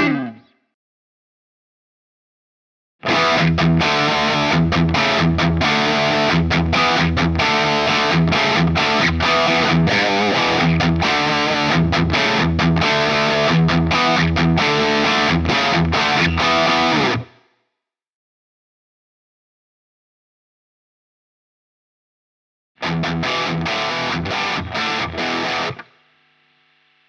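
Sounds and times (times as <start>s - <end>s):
distorted electric guitar riff: 0.0s - 0.6s, 3.0s - 17.4s, 22.8s - 27.0s.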